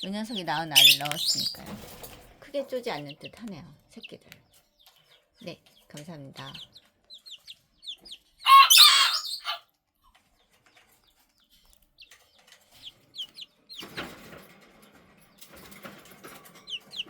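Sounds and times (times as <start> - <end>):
chicks peeping: 0.0 - 1.8, 2.6 - 17.0
chicken squawk: 8.4 - 9.6.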